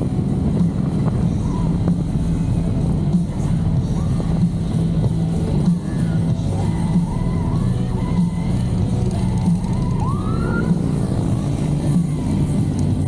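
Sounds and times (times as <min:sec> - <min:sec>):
motorcycle engines running: 0:00.0 - 0:13.0
music: 0:00.0 - 0:13.0
rising siren whoop: 0:09.7 - 0:11.4.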